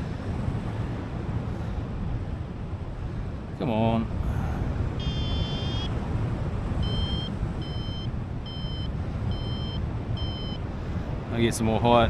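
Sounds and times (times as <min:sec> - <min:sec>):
wind rumble on microphone: 0:00.0 - 0:12.0
variometer beeping: 0:05.0 - 0:05.9, 0:06.8 - 0:10.6.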